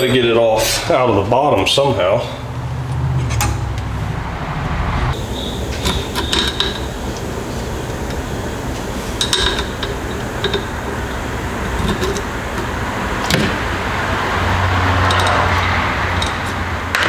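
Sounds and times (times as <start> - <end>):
hand tools clinking on metal: 5.7 - 6.9, 9.2 - 17.0.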